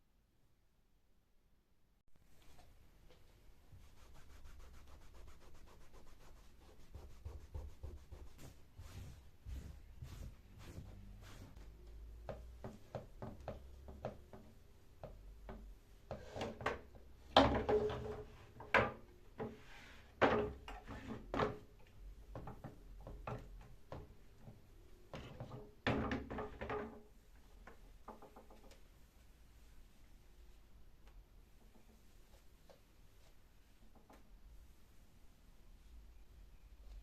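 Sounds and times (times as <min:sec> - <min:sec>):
objects knocking and clattering: 0:16.4 - 0:19.6, 0:20.2 - 0:21.7, 0:25.2 - 0:27.0.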